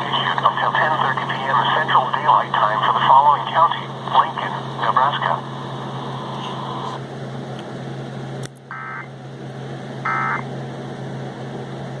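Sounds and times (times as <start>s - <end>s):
steady low hum: 0.0s - 12.0s
warbling two-tone data bursts: 8.7s - 9.1s, 10.1s - 10.4s.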